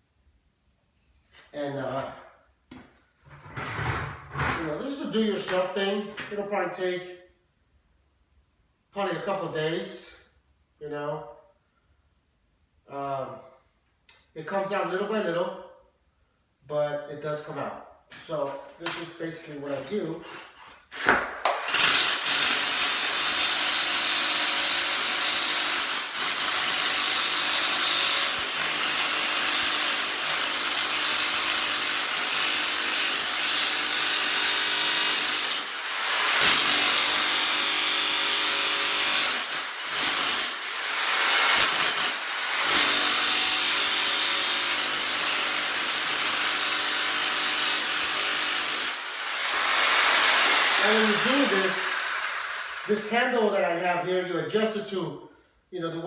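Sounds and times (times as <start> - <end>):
rotary hammer chiseling concrete: 19.7 - 53.0.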